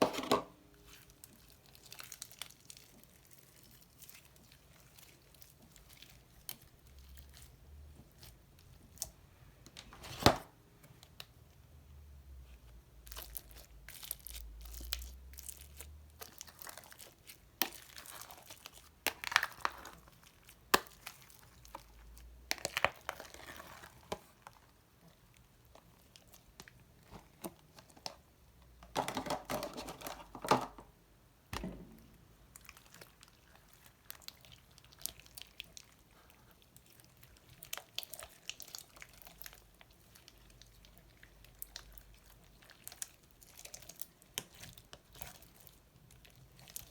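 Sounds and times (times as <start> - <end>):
slime crackling and popping: 13.0 - 24.7.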